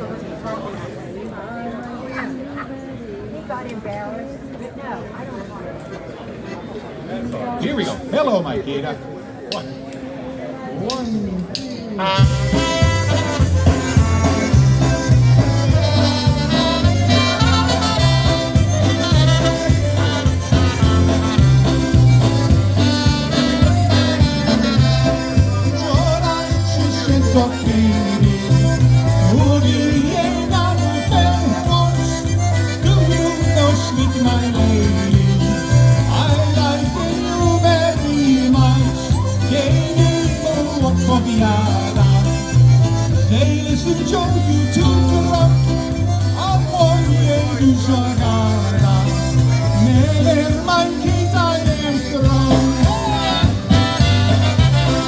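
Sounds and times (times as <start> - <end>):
polka band playing: 11.1 - 55.0
bouncing bass line: 12.2 - 55.0.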